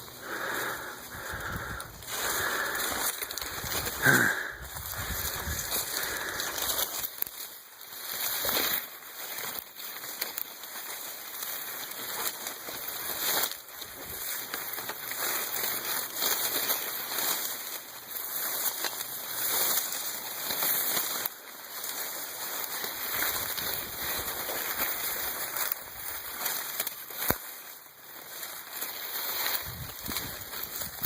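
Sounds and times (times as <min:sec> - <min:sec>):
heavy breathing: 0:00.0 - 0:07.4.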